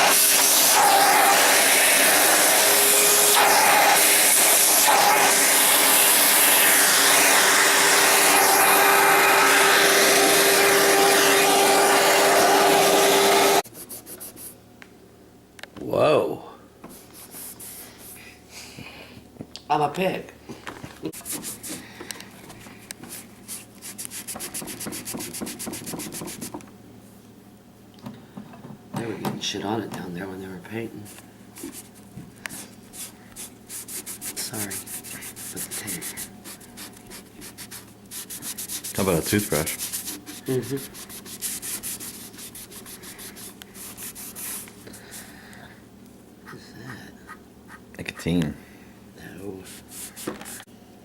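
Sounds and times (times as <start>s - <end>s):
air rushing from cleaning tool: 0.0s - 13.6s
hand scrubbing on turntable: 16.9s - 18.2s, 21.1s - 21.9s, 23.0s - 26.5s, 31.0s - 45.3s, 49.6s - 50.6s.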